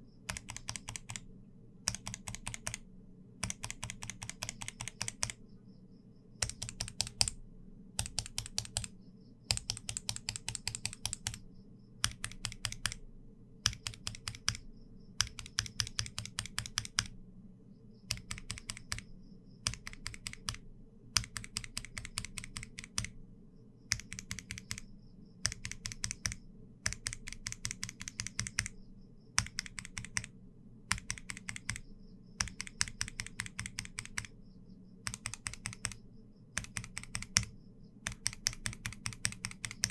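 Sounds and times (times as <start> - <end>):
mechanical keyboard typing: 0.3 - 1.2, 1.9 - 2.8, 3.4 - 5.4, 6.4 - 7.4, 8.0 - 11.4, 12.0 - 13.0, 13.6 - 14.6, 15.2 - 17.1, 18.1 - 20.6, 21.2 - 23.2, 23.9 - 28.8, 29.4 - 30.3, 30.9 - 34.4, 35.0 - 36.0, 36.6 - 39.9.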